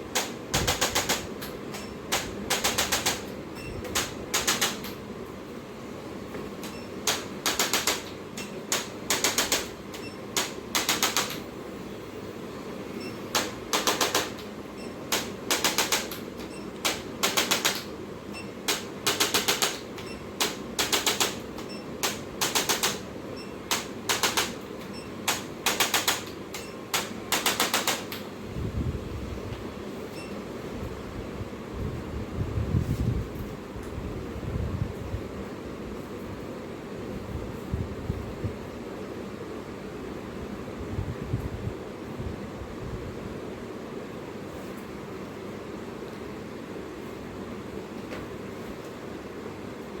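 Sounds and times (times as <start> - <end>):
rapid mechanical clicking: 0.1 - 5.0, 6.6 - 11.5, 13.3 - 18.0, 18.6 - 23.1, 23.7 - 28.3.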